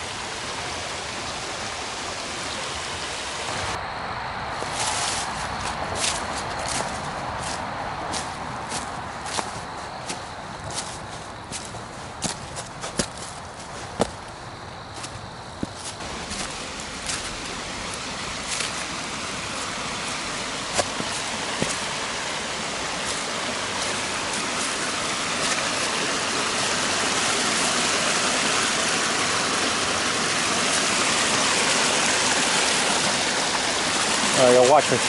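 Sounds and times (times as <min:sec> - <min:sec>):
brook water rushing: 0:00.0 - 0:03.8, 0:04.5 - 0:35.0
footsteps on trail: 0:04.5 - 0:29.1.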